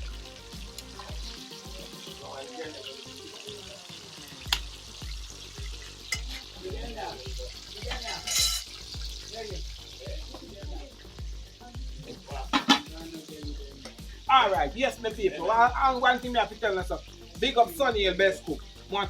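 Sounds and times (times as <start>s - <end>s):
music with a bass beat: 0.0s - 2.4s, 4.4s - 19.0s
fish sizzling in hot oil: 0.0s - 19.0s
clicks and scraping in a pot: 4.0s - 4.8s, 5.6s - 6.6s, 7.6s - 9.3s, 12.4s - 13.2s, 13.8s - 14.0s.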